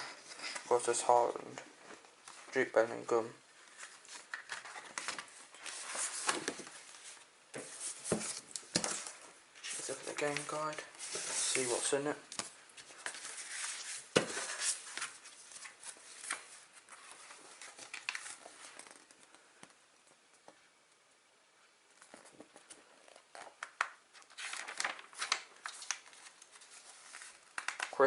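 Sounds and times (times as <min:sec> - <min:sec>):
paper rustling and crinkling: 0:03.6 - 0:19.3, 0:22.0 - 0:28.0.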